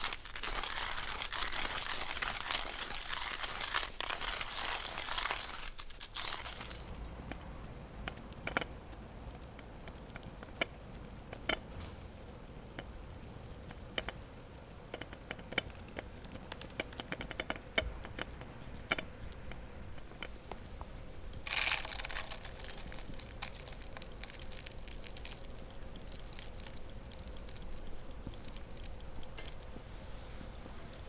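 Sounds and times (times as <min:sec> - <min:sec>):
wood fire crackling in a stove: 0:00.0 - 0:31.0.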